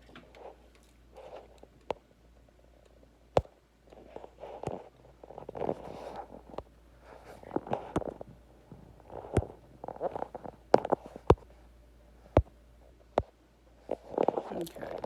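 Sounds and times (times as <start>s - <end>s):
handling rustling and scraping: 3.9s - 11.4s.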